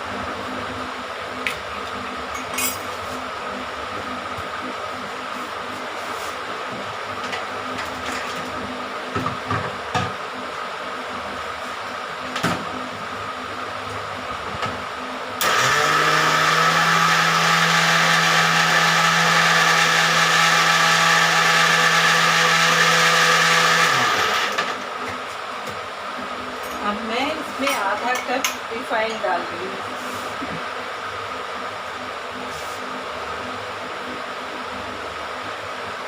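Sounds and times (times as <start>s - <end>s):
electric mixer beating batter: 15.4s - 24.9s.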